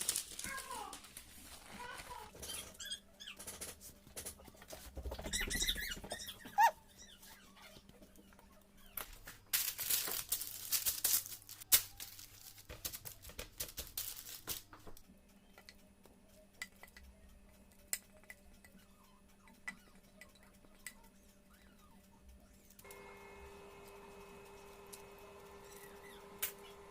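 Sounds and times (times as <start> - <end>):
rustling: 0.0 - 2.8, 9.0 - 15.0
utensils clicking: 22.8 - 26.9.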